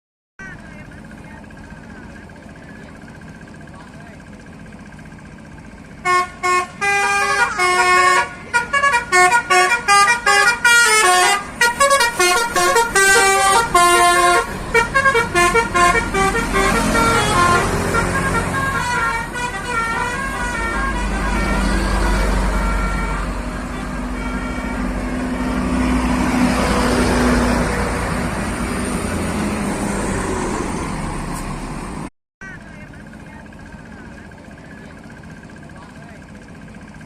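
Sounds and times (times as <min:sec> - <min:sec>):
low bus engine rumble: 0:00.4 - 0:37.0
multi-tone bus horn tune: 0:05.7 - 0:29.5.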